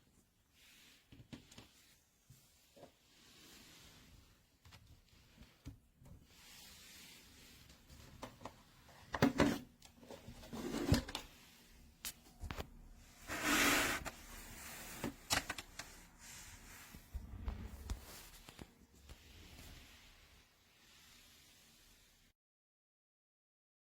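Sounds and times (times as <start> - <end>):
rustling swish: 16.2 - 22.1.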